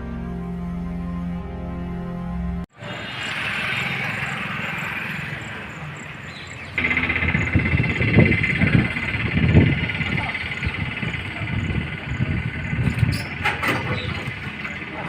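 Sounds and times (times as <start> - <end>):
background music: 0.0 - 2.7
insect chirring: 3.1 - 13.3
low rumbling: 5.5 - 15.0.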